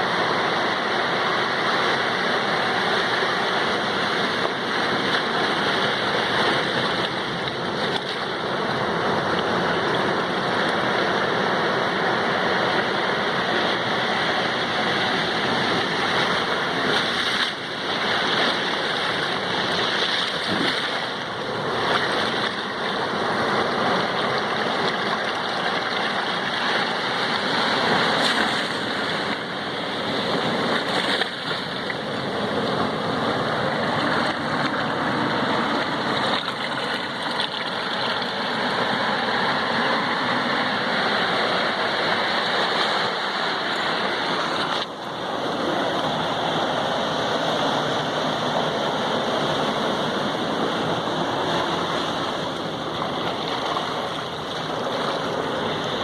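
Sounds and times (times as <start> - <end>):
sea waves on shore: 0.0 - 56.0.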